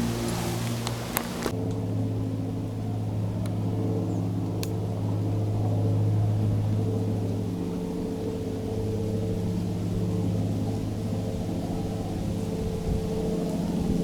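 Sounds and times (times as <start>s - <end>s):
car engine and road noise: 0.0s - 1.5s
faint clicks: 0.0s - 1.8s.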